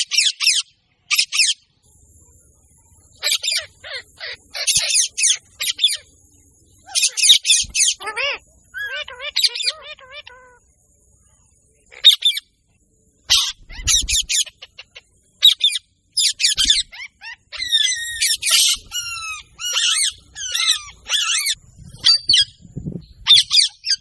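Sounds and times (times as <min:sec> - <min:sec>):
birds chirping and squawking: 0:00.0 - 0:01.8, 0:03.0 - 0:10.8, 0:11.9 - 0:24.0.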